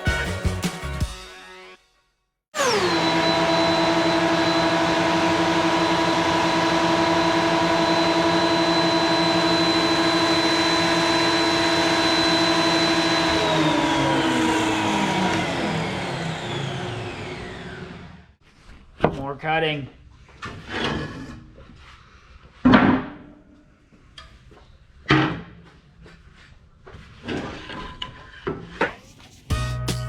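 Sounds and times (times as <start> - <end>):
electric power tool motor running: 2.6 - 18.4.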